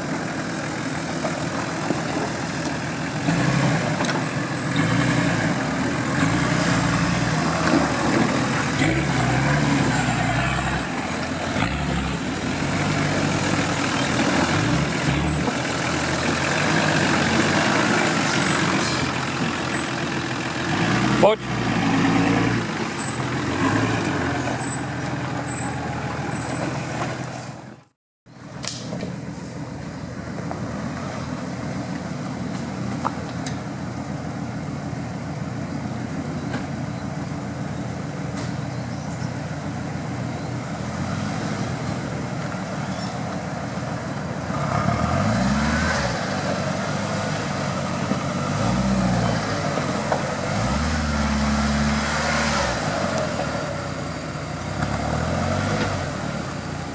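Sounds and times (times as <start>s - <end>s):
off-road vehicle engine revving: 0.0s - 28.0s, 40.5s - 56.9s.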